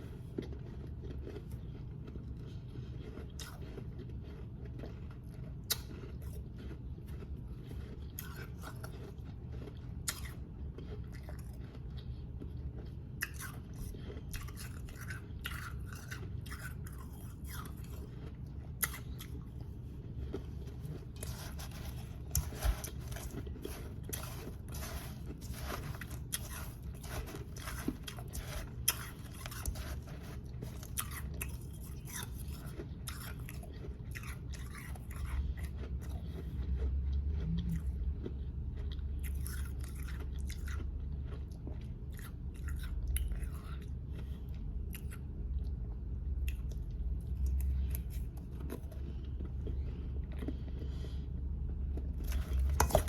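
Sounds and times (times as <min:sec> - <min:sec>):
low steady hum: 0:00.0 - 0:53.0
person crunching ice: 0:07.8 - 0:11.8, 0:12.8 - 0:36.2.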